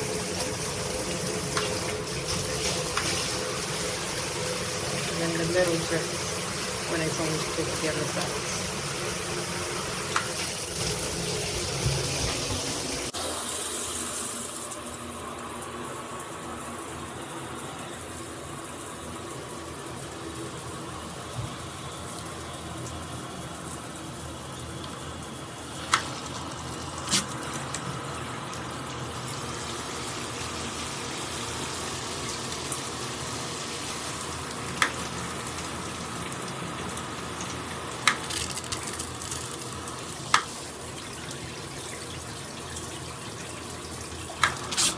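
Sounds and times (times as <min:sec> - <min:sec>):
water spraying from shower head: 0:25.8 - 0:27.8, 0:44.4 - 0:44.9.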